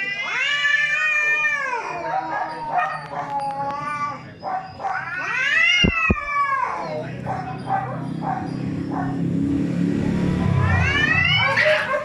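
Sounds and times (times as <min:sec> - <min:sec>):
cat yowling: 0:00.0 - 0:07.1, 0:10.4 - 0:12.0.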